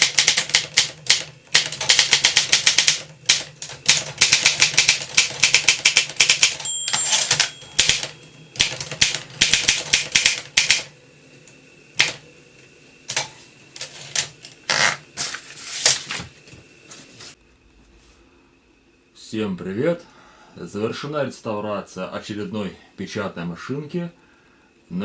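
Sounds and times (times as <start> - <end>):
typewriter keys striking: 0.0 - 10.9, 12.0 - 12.2
typewriter bell ring: 3.9 - 10.8.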